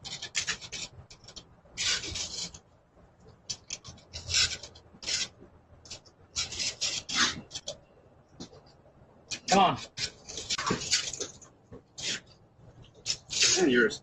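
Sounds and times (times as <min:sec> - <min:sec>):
harsh rasping scraping: 0:00.0 - 0:02.6, 0:03.5 - 0:07.8, 0:09.3 - 0:11.4, 0:12.0 - 0:12.3, 0:13.0 - 0:13.9.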